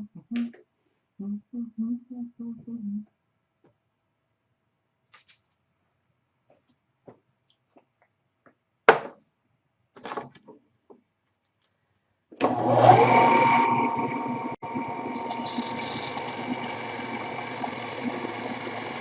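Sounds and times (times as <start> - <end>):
power tool motor whine: 12.4 - 19.0.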